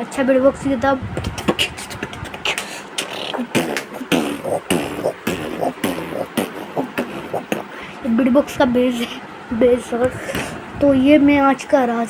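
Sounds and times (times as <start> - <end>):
person beatboxing: 0.9 - 9.2.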